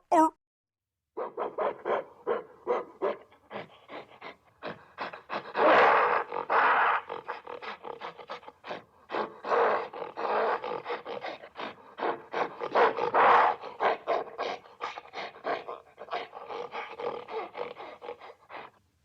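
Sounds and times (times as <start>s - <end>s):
animal grunts: 3.4s - 18.8s
animal roaring: 4.6s - 18.4s.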